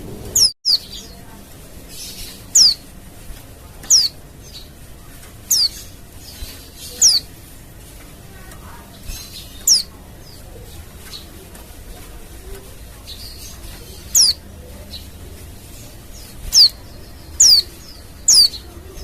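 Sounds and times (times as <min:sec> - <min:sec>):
bird high down-slurred calls: 0:13.5 - 0:14.4.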